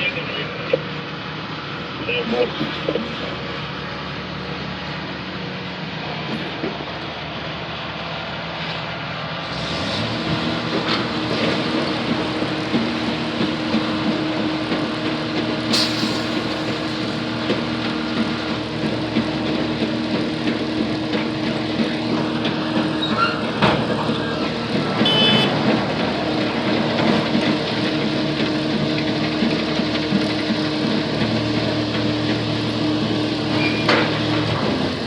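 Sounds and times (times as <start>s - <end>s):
heavy machinery engine running: 0.0s - 35.0s
short hiss: 15.7s - 16.6s
brief high beep: 25.0s - 25.5s.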